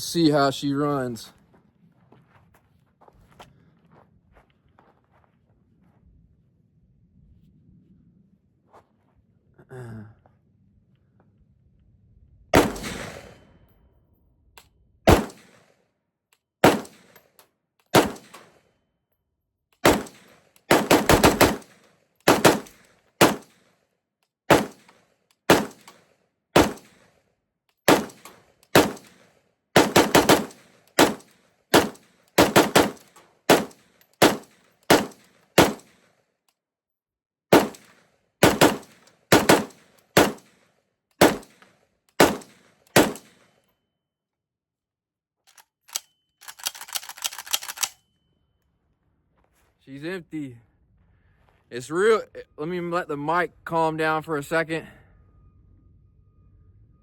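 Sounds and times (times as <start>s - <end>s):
rifle shots: 12.6s - 13.6s, 15.1s - 15.8s, 16.6s - 17.2s, 17.9s - 18.6s, 19.8s - 23.7s, 24.5s - 27.2s, 27.9s - 36.1s, 37.5s - 40.6s, 41.2s - 43.5s.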